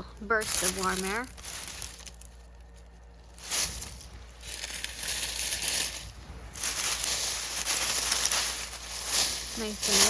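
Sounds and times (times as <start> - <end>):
cloth cover rustling: 0.4 - 10.0.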